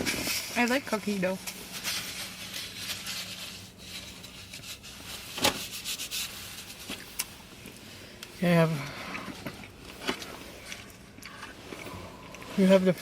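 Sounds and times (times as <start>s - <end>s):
low steady hum: 0.0s - 13.0s
eating from food containers: 5.8s - 13.0s.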